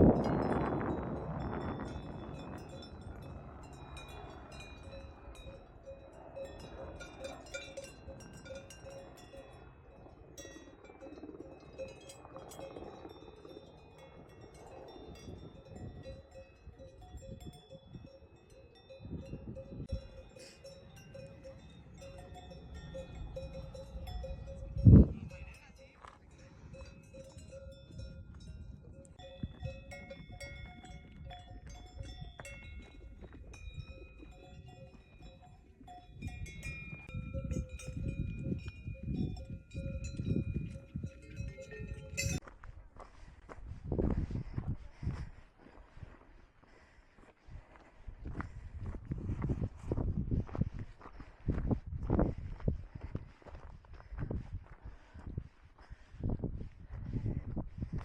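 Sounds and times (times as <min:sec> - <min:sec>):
livestock bells clinking: 0:00.0 - 0:42.5
bell ringing in quick rhythm: 0:00.1 - 0:09.7, 0:10.4 - 0:42.4.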